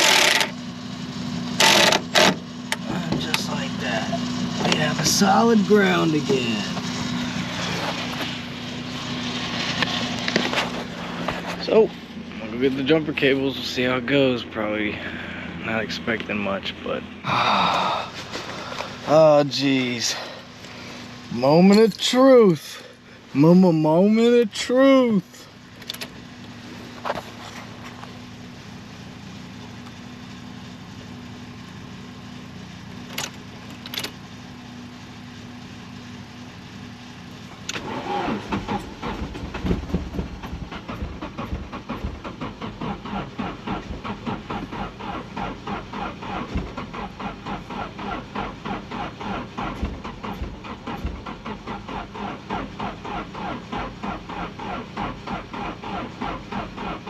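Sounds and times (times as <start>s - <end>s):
starter motor cranking engine: 0.0s - 0.6s, 1.6s - 8.4s, 37.6s - 57.0s.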